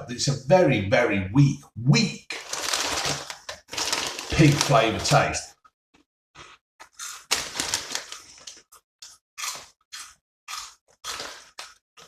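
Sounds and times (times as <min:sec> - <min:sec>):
crisps being chewed: 0:02.3 - 0:05.4, 0:06.4 - 0:12.0.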